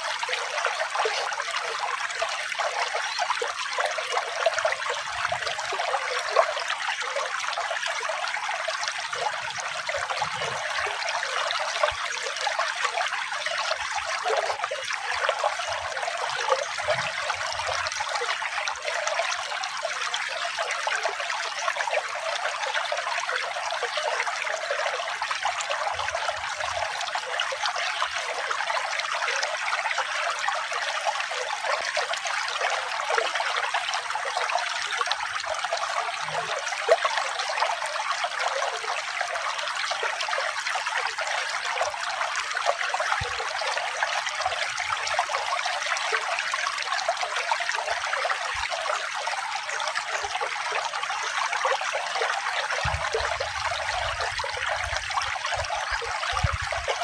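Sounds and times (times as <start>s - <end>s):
water trickling and splashing: 0.0s - 57.0s.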